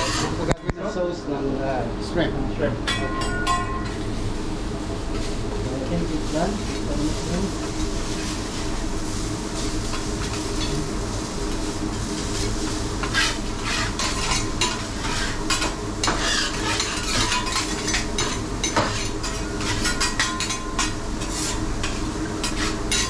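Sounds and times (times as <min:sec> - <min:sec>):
metal spatulas scraping and clacking: 0:00.0 - 0:00.5, 0:12.4 - 0:23.0
steady low hum: 0:00.0 - 0:23.0
shrimp sizzling on a griddle: 0:03.4 - 0:23.0.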